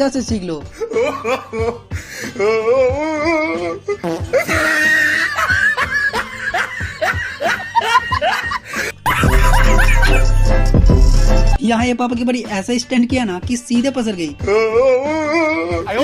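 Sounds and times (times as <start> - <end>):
background music: 0.0 - 16.0
people laughing: 4.3 - 10.4
music with heavy bass: 5.4 - 11.6.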